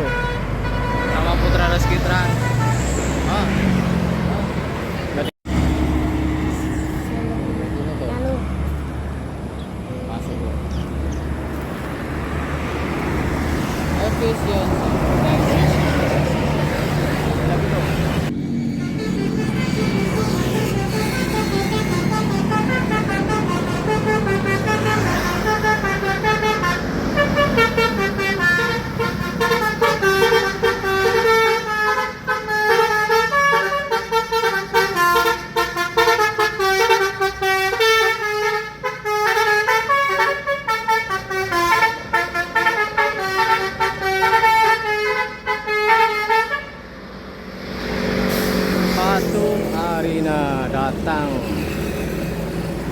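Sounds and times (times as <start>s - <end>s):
musical bus horn melody: 0.0s - 3.1s, 17.8s - 46.9s, 48.3s - 52.2s
bus engine running: 11.0s - 52.9s.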